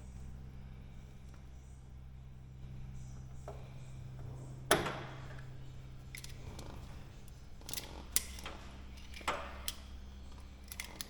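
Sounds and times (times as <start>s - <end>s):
light clicks of tools: 5.4s - 11.0s.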